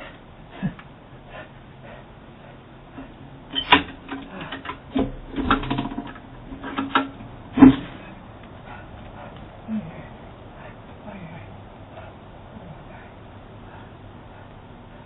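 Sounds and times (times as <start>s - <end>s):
sharp knocks and clicks: 3.5s - 8.0s.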